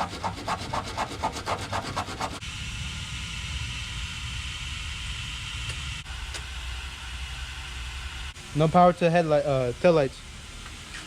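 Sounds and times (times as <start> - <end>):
sandpaper rubbing on metal: 0.0 - 2.4
steady hiss: 2.3 - 11.0.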